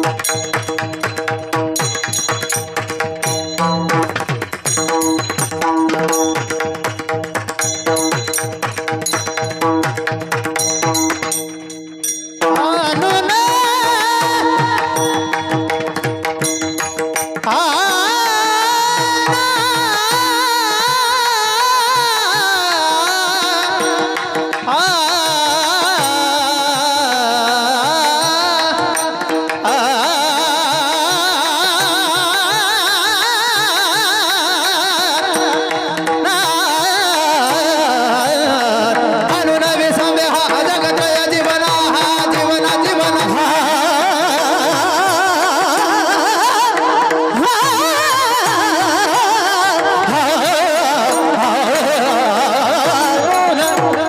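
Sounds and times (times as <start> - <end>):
drum strokes: 0.0 - 11.7.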